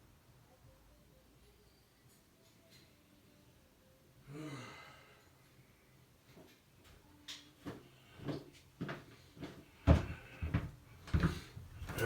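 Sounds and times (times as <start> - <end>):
person sighing: 4.2 - 5.2.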